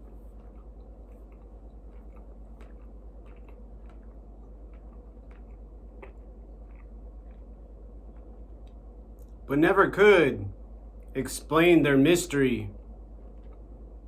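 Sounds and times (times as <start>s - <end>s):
steady low hum: 0.0s - 14.0s
small irregular clicks: 13.2s - 13.7s.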